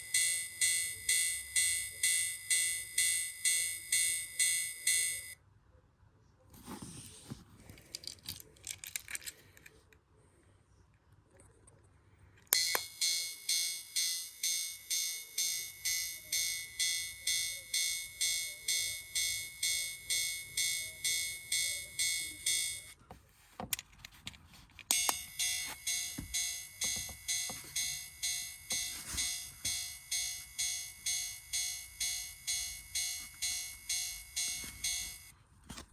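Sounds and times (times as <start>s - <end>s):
electronic crossing bell dinging: 0.0s - 5.4s, 12.6s - 23.0s, 24.9s - 35.3s
toy clicking and rattling: 8.0s - 9.4s.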